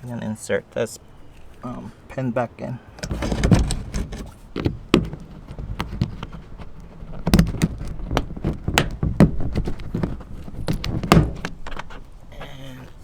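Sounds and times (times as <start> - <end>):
plastic parts clicking: 2.9 - 13.0.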